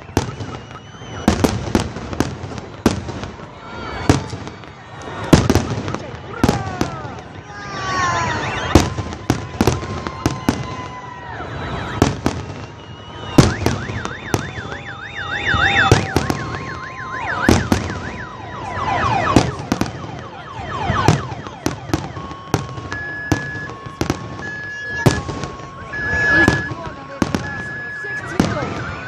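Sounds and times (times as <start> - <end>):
fireworks bangs: 0.0 - 29.0
whistling firework shells: 0.0 - 29.0
car alarm warbling and beeping: 13.1 - 29.0.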